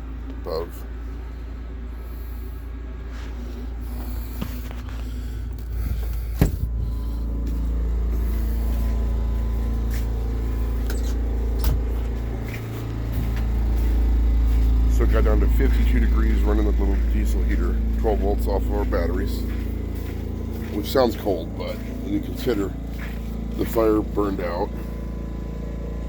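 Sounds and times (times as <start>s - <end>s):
air heater humming: 0.0s - 26.0s.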